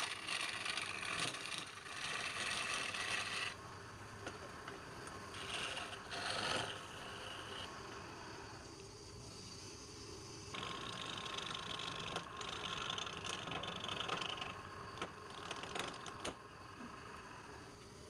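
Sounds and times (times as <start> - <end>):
turning tool cutting wood: 0.0 - 3.6, 5.3 - 7.7, 10.6 - 16.4
wood lathe whine: 0.0 - 18.0.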